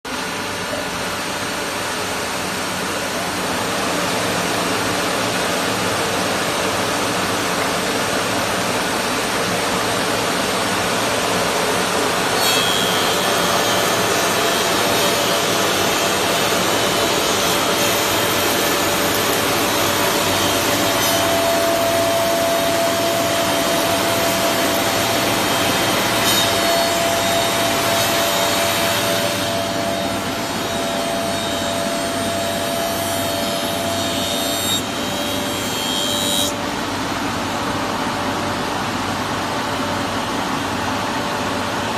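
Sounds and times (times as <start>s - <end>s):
wood planer cutting timber: 8.9s - 36.6s
steady high whine: 13.1s - 34.0s.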